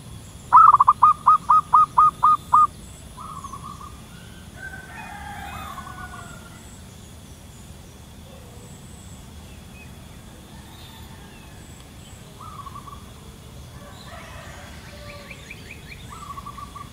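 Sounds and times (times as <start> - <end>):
dove trilling coo: 0.0 - 6.8, 8.2 - 9.0, 10.2 - 16.9
bird call of several notes: 0.5 - 4.0.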